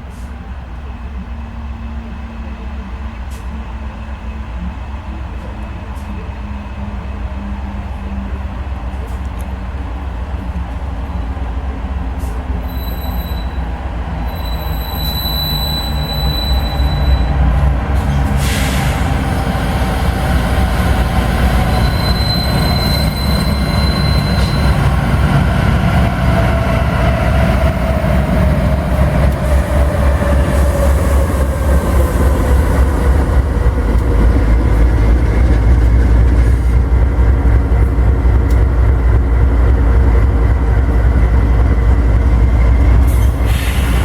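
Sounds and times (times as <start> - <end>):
train rumbling past: 0.0 - 44.0
high wheel squeal: 12.6 - 17.4, 21.2 - 25.1.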